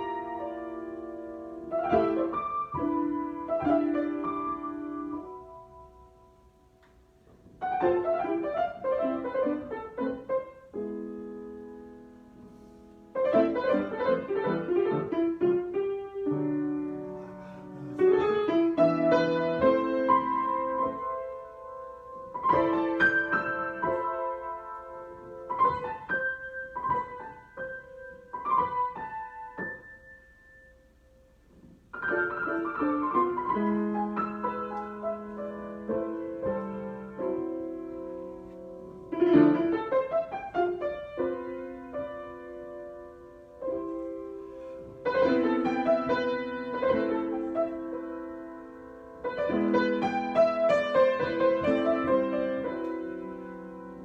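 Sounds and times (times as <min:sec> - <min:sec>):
solo piano: 0:00.0 - 0:54.0.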